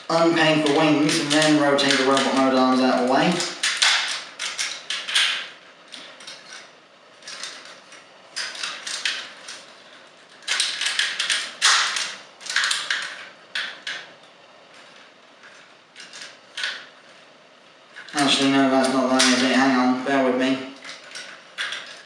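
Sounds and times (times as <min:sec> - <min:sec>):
plastic toy parts clicking: 0:00.5 - 0:14.1, 0:15.4 - 0:16.9, 0:20.8 - 0:22.0.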